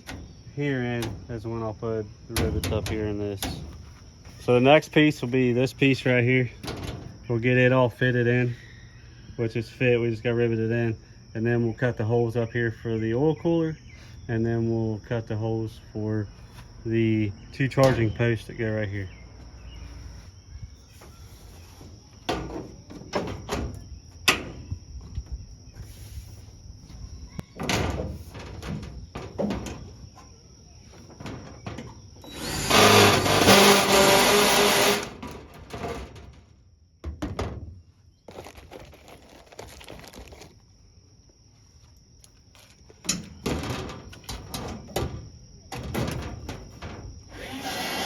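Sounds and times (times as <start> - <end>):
tools and car panels clattering: 0.0 - 1.7, 2.3 - 4.5, 6.5 - 7.3, 21.8 - 25.4, 27.4 - 40.5, 42.6 - 47.8
power drill running: 32.3 - 35.1, 47.4 - 48.0.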